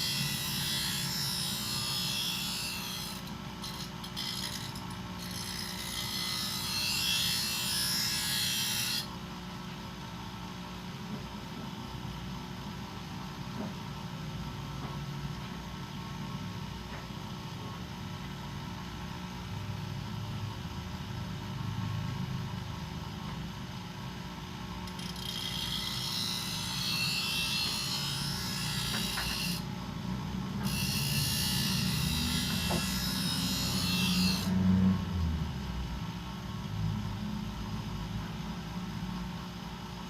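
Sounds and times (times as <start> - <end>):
bench grinder motor humming: 30.6 - 34.6.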